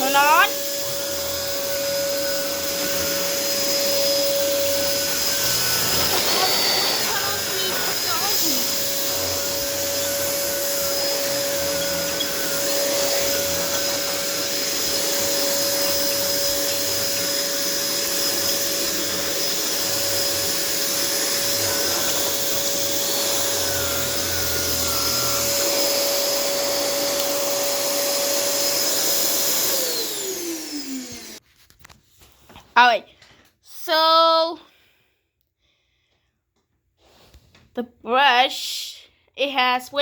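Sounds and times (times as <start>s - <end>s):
vacuum cleaner running: 0.0s - 31.4s
vacuum motor winding down: 0.0s - 31.4s.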